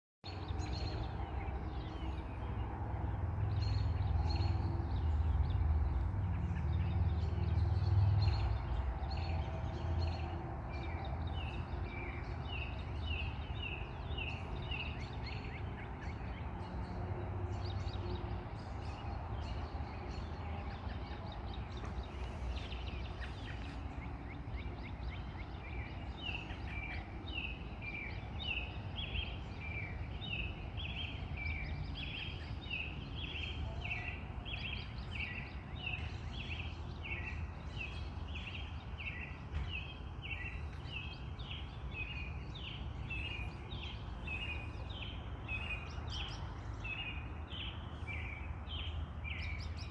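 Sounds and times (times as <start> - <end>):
birds chirping: 0.3 - 49.9.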